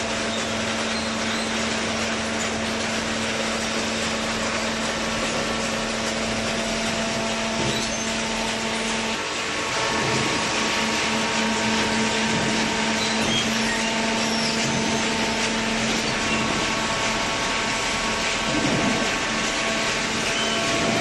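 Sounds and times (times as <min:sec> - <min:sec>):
baler machine whirring: 0:01.8 - 0:21.0.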